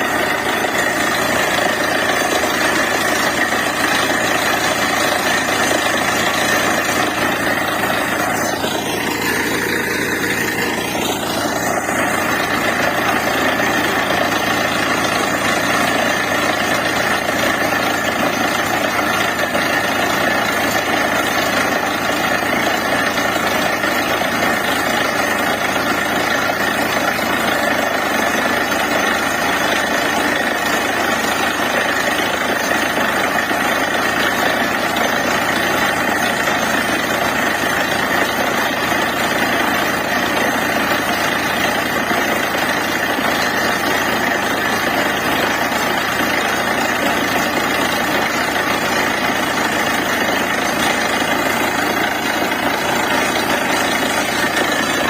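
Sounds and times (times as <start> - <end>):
drilling rig running: 0.0 - 55.0.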